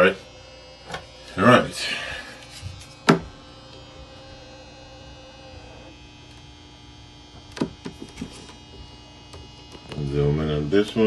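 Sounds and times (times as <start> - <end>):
faint tone: 0.0 - 7.3
low electrical hum: 0.0 - 11.0.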